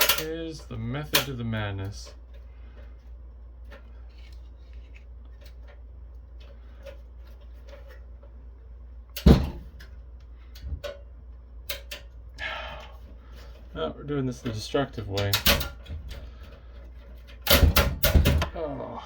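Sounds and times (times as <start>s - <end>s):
small clicks and taps of parts: 9.8s - 12.2s.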